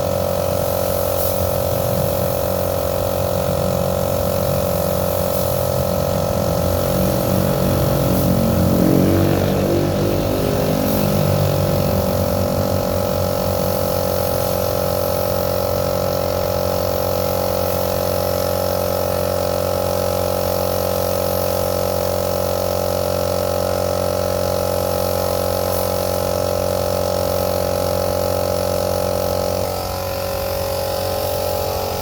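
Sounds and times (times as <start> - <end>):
car engine idling: 2.7 - 16.2.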